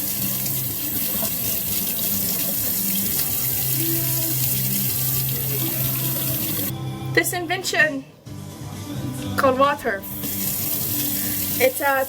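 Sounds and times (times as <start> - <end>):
dishes being washed: 0.0 - 6.7, 10.1 - 12.0
tap running into sink: 0.0 - 6.7.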